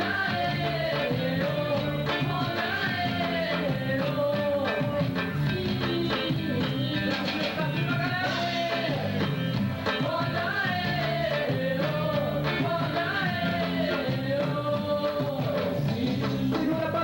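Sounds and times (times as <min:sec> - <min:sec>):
band playing: 0:00.0 - 0:17.0
lead singer singing: 0:00.0 - 0:17.0.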